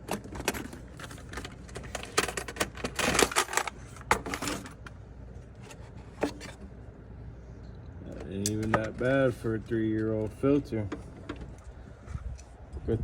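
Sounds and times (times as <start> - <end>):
tools and metal parts clattering: 0.0 - 5.0.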